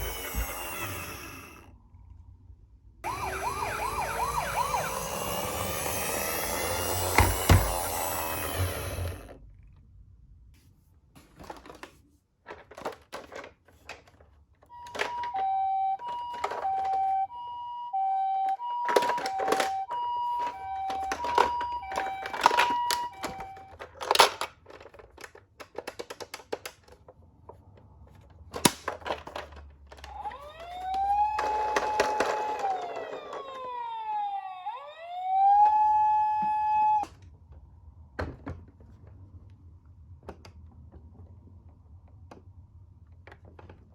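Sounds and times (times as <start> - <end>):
two-tone ambulance siren: 3.0 - 9.3, 14.7 - 23.8, 30.1 - 37.1
wailing siren: 3.0 - 9.3, 14.7 - 23.8, 30.1 - 37.2.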